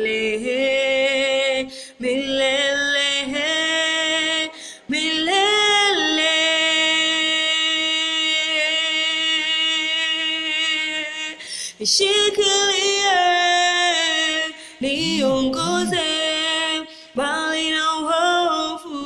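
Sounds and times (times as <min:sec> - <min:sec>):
singer breath: 0:01.7 - 0:02.0, 0:04.5 - 0:04.9, 0:11.4 - 0:11.8, 0:14.6 - 0:16.0, 0:16.9 - 0:17.2
person singing unaccompanied: 0:12.0 - 0:16.7.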